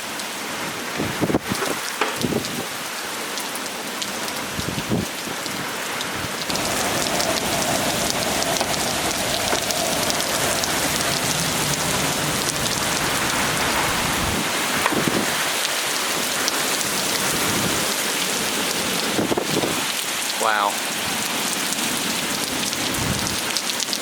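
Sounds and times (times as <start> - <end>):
heavy rain in wind: 0.0 - 24.0.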